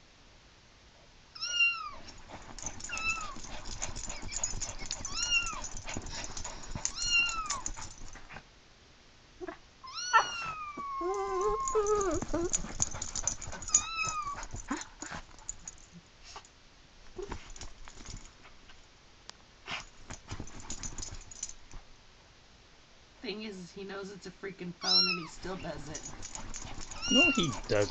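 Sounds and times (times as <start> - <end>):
dog making excited sounds: 2.0 - 8.4, 10.2 - 15.7, 25.3 - 27.9
kitten mewing ringtone: 5.0 - 5.6, 24.8 - 25.4, 27.0 - 27.6.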